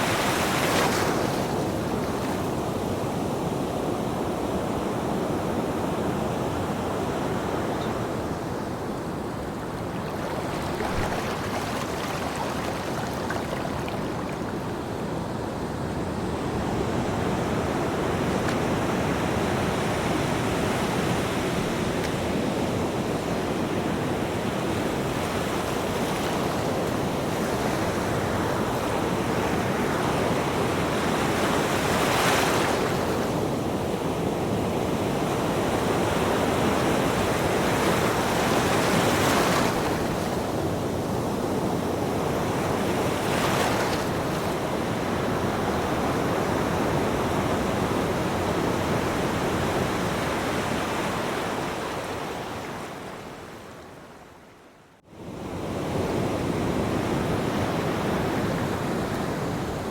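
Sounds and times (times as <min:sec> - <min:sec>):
ocean waves surf: 0:00.0 - 0:53.6
waves breaking: 0:08.4 - 0:15.4.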